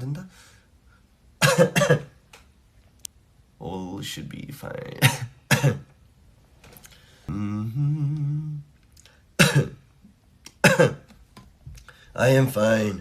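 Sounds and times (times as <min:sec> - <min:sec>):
man coughing: 0:01.4 - 0:02.2, 0:05.0 - 0:05.9, 0:09.4 - 0:09.8, 0:10.6 - 0:11.1
man humming rising note: 0:07.3 - 0:08.7.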